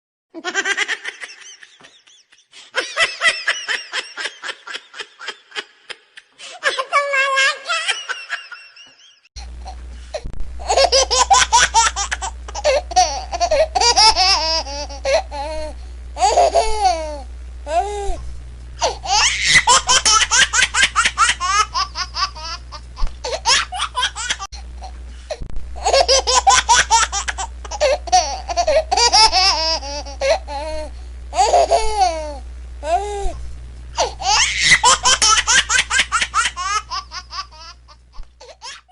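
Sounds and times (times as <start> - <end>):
high-pitched voice laughing: 0.4 - 9.0, 19.1 - 22.6, 34.0 - 37.8
steady low hum: 9.4 - 38.9.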